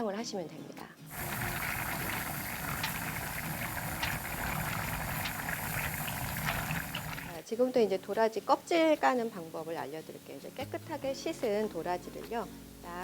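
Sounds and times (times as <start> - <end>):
stock simmering in a pot: 1.1 - 7.6.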